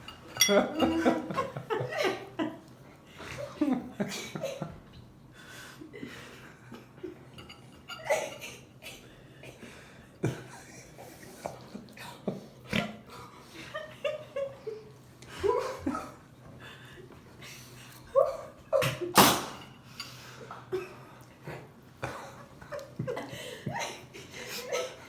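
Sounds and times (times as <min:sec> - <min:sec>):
soft human laughter: 0:00.4 - 0:04.9, 0:07.9 - 0:17.1, 0:20.5 - 0:25.0.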